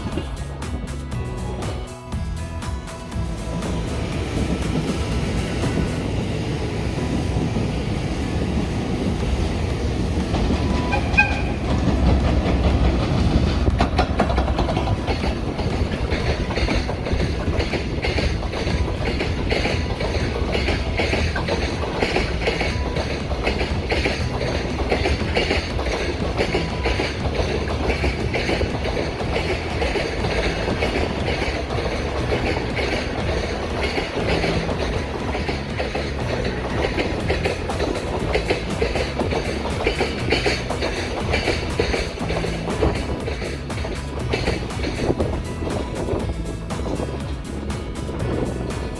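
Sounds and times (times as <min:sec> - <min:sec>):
wheels clattering over rail joints: 0:03.2 - 0:48.9
locomotive horn toot: 0:10.8 - 0:11.8.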